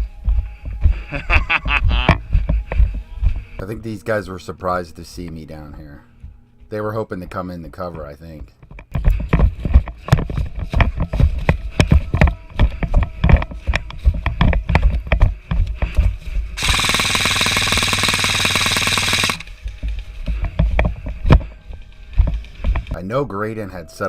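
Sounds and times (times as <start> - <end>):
knocks and thumps of movement: 7.7 - 16.6, 19.6 - 23.0
airsoft gun full-auto rattle: 16.6 - 19.5.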